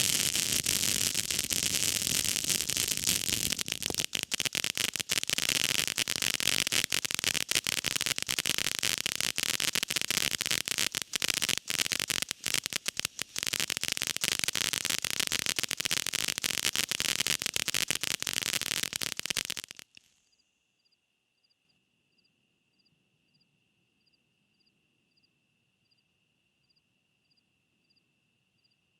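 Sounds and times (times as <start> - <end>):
fountain firework crackling hiss: 0.0 - 20.0.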